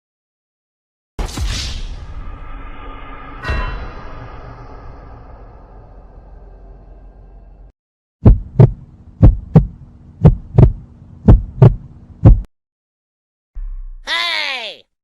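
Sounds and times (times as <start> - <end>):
steady low hum: 4.3 - 12.5
heartbeat double thumps: 8.2 - 12.5.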